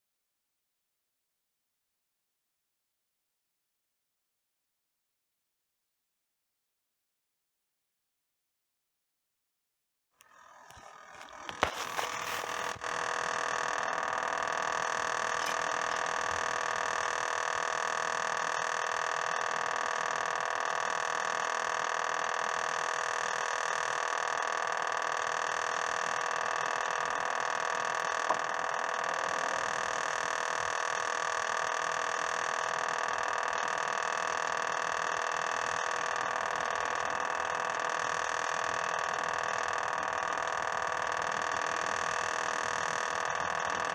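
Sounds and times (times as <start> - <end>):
compressor start-up clicks: 10.2 - 43.9
refrigerator compressor humming: 10.3 - 20.6.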